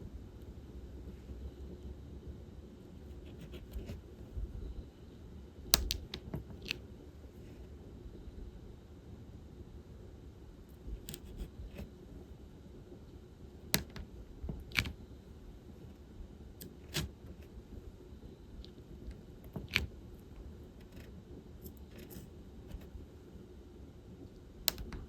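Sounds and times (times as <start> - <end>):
faint low hum: 0.0 - 25.0
small plastic clicks and taps: 5.8 - 6.8, 13.8 - 15.0, 24.7 - 25.0.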